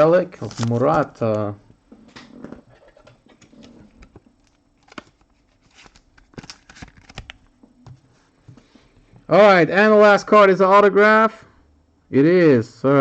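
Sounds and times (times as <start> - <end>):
trading cards rustling and clicking: 3.4 - 7.4.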